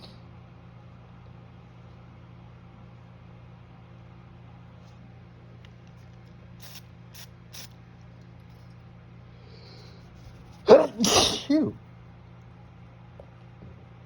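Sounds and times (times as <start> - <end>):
perfume spray hisses: 6.6 - 7.7
person sneezing: 10.7 - 11.8.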